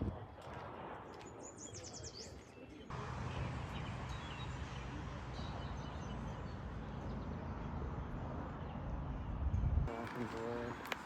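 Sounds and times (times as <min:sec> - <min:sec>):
wind rumble on microphone: 0:00.0 - 0:02.4, 0:08.0 - 0:09.9.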